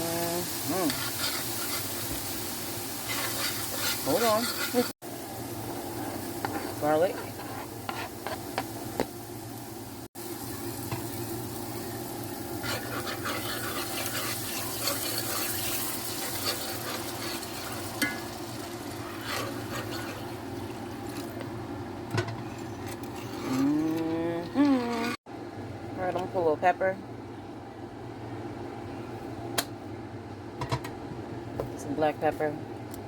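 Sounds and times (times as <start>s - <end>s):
food sizzling: 0.0s - 21.7s
spoon scraping a pot: 0.9s - 2.1s, 3.0s - 5.0s, 6.0s - 8.6s, 12.6s - 18.3s, 18.9s - 20.4s, 22.3s - 24.1s.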